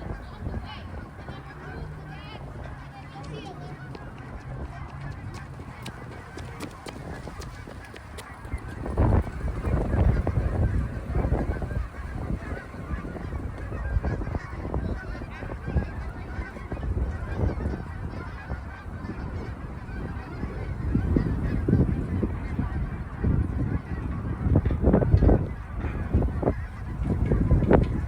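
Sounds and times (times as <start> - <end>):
geese honking: 0.0 - 28.0.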